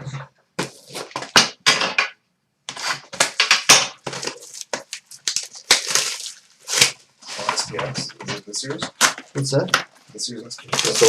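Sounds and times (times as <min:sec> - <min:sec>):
foil packs tearing and crinkling: 0:02.7 - 0:07.8, 0:10.6 - 0:11.0.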